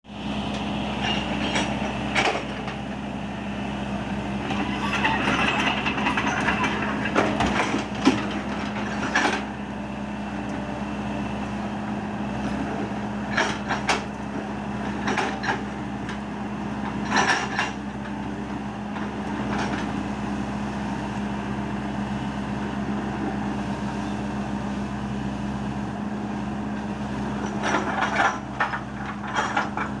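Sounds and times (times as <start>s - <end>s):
excavator diesel engine running: 0.1s - 30.0s.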